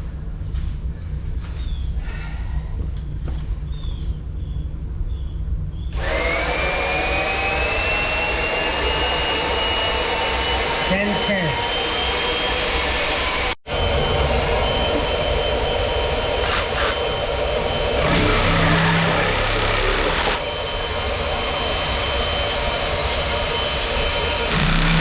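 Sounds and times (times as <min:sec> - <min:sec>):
electric motor whining: 0:05.9 - 0:25.0.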